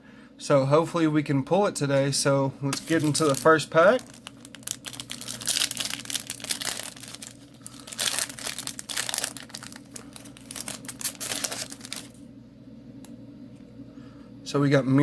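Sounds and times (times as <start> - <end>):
foil wrapper crinkling and tearing: 2.7 - 12.2.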